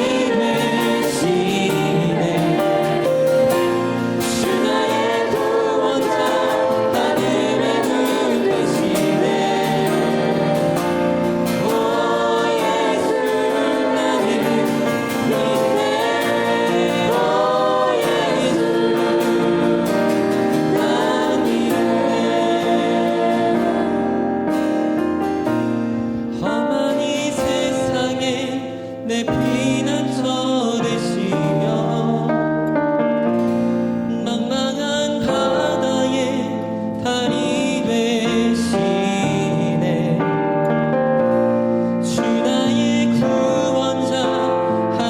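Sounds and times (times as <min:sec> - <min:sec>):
group of voices singing: 0:00.0 - 0:25.2, 0:26.4 - 0:32.6, 0:41.7 - 0:45.0.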